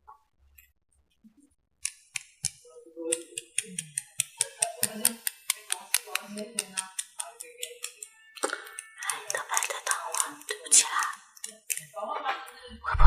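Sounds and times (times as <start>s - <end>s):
sharp clicks and taps: 1.8s - 11.9s.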